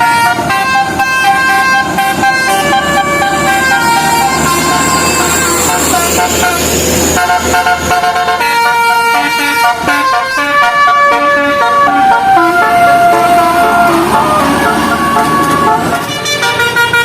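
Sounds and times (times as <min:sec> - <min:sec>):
multi-tone bus horn tune: 0:00.0 - 0:17.0
noisy vehicle sound: 0:00.0 - 0:17.0.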